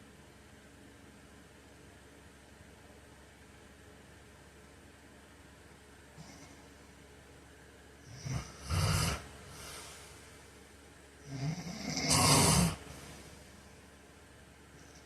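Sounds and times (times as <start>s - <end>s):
man snoring: 8.1s - 10.2s, 11.2s - 13.3s.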